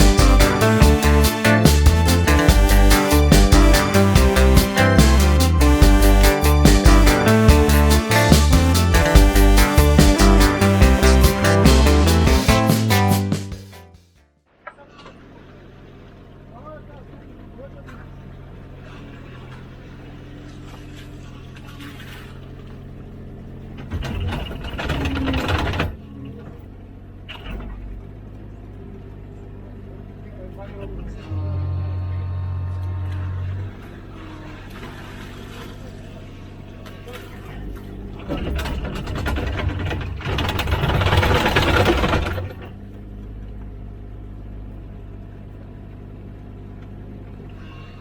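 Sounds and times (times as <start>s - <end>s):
mini excavator diesel engine: 15.2s - 48.0s
digging rattling and grinding: 38.2s - 42.7s.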